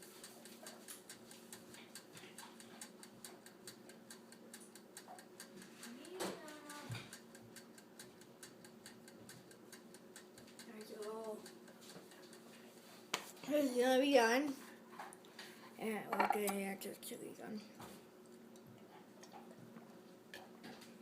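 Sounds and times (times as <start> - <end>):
mechanical timer ticking: 0.0 - 14.6.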